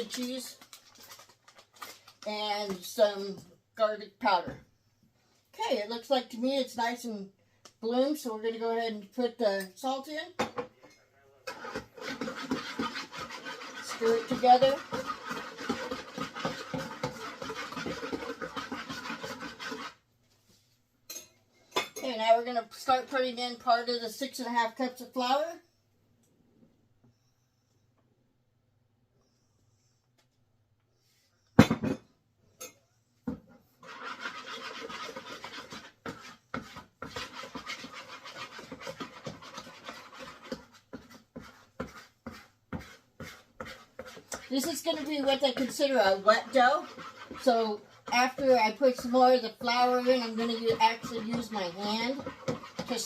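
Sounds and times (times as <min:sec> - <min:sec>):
spoon scraping mixing bowl: 0:11.4 - 0:20.0, 0:33.7 - 0:53.0.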